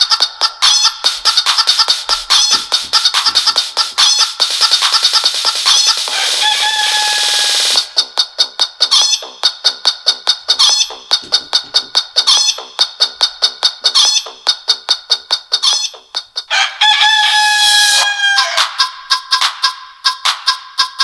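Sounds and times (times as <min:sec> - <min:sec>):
alarm tone of chicken clucking: 0:06.0 - 0:07.9, 0:15.6 - 0:19.0
rooster crow: 0:06.1 - 0:07.9, 0:16.5 - 0:18.9.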